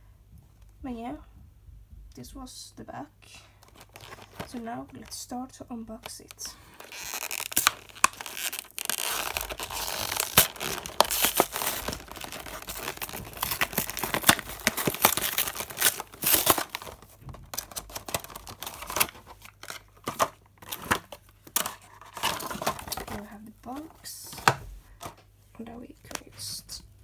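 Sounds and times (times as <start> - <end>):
packaging tearing and crinkling: 3.6 - 4.6, 6.7 - 23.2.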